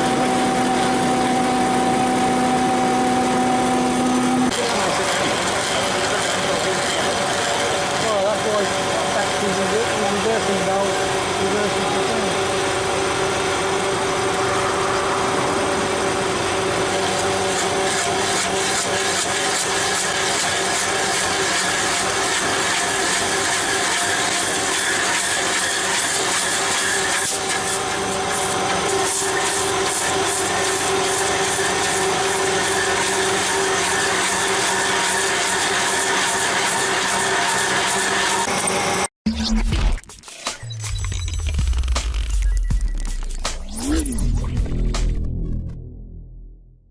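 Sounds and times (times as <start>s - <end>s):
heavy machine engine humming: 0.0s - 18.7s.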